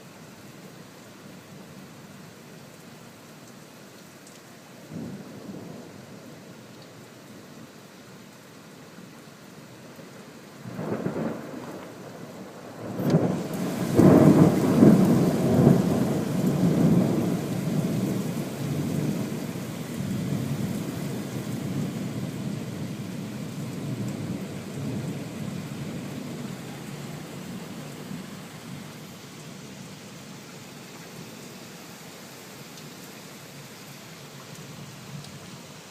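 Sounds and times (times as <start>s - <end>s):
steady rain: 0.0s - 35.9s
thunder rumbling and cracking: 12.6s - 27.5s.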